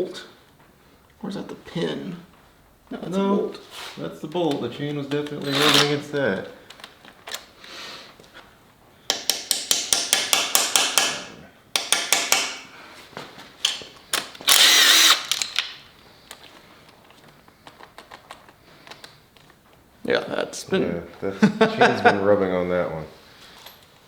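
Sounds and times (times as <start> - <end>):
power tool noise: 5.4 - 6.1, 14.4 - 15.7
clicks and taps: 9.1 - 12.6
ratchet wrench clicking: 14.5 - 15.6.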